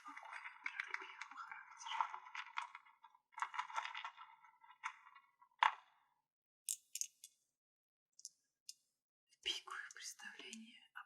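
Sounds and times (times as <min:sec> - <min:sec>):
crystals rattling and clinking: 0:00.0 - 0:06.1.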